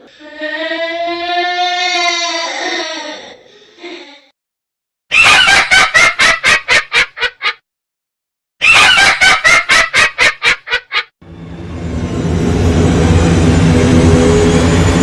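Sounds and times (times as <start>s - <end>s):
cackling sound effect: 5.1s - 7.6s, 8.6s - 11.1s.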